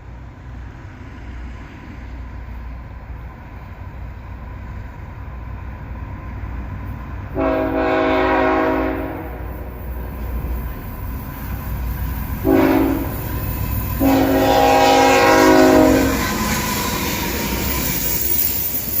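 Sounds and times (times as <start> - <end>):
low rumble of train: 0.0 - 19.0
locomotive air horn blasts: 7.4 - 9.6, 12.4 - 13.3, 14.0 - 16.4.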